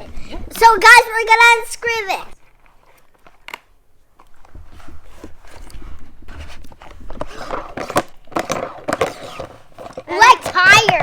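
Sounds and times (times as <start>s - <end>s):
plastic egg scraping and creaking: 2.5s - 11.0s.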